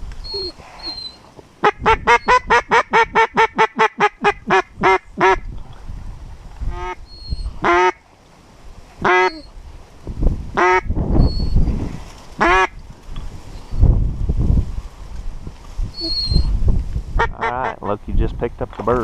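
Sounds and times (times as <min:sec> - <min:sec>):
duck quacking: 0:01.6 - 0:05.4, 0:06.7 - 0:07.0, 0:07.6 - 0:08.0, 0:09.0 - 0:09.5, 0:10.6 - 0:10.9, 0:12.4 - 0:12.7, 0:17.2 - 0:18.0.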